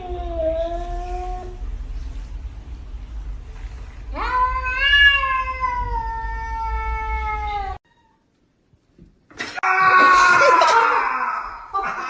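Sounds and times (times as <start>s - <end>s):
low steady rumble: 0.0s - 7.8s
cat yowling: 4.1s - 8.2s.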